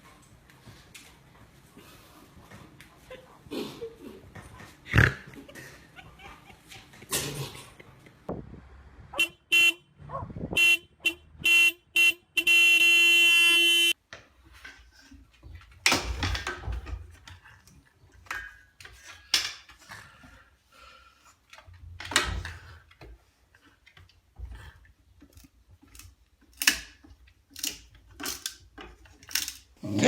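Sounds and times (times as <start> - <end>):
horn honking: 9.1 - 14.0.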